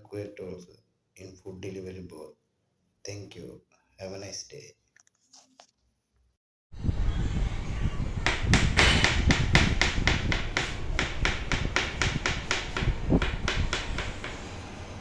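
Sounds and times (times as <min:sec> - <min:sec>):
low background rumble: 0:06.8 - 0:15.0
knife chopping on cutting board: 0:08.3 - 0:14.6.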